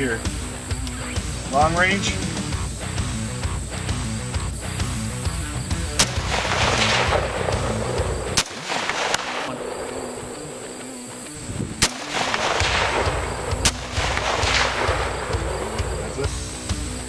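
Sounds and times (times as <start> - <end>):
background music: 0.0 - 17.0
rifle shots: 6.0 - 10.9, 11.8 - 16.2.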